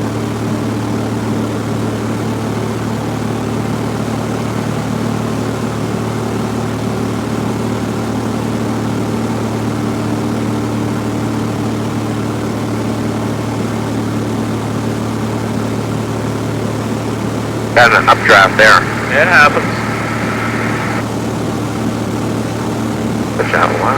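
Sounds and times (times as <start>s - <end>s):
airplane engine droning: 17.6s - 21.1s, 23.3s - 23.9s.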